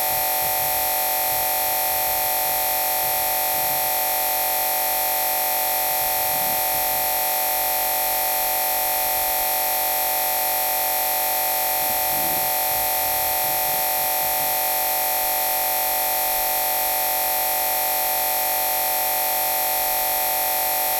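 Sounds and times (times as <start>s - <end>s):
static noise with whine and hiss: 0.0s - 17.3s.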